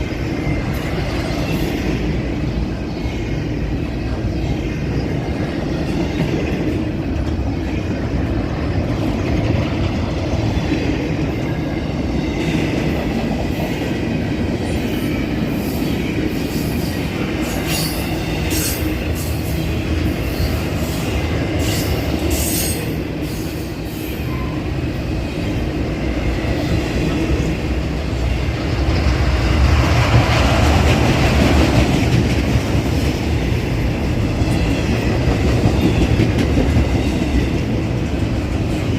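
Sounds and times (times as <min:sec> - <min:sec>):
freight train rumbling past: 0:00.0 - 0:38.9
wheels clattering on rails: 0:25.5 - 0:38.9.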